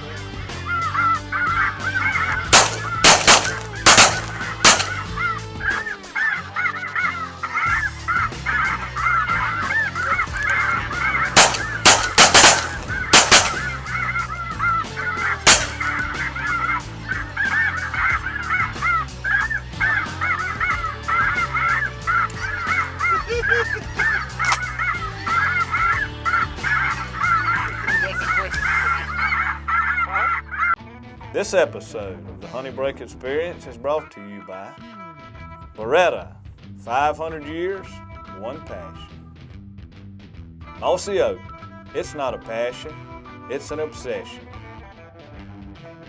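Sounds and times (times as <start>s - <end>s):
flock of geese honking: 0.7s - 30.8s
shotgun shots: 2.6s - 5.1s, 11.4s - 13.9s, 15.5s - 16.0s.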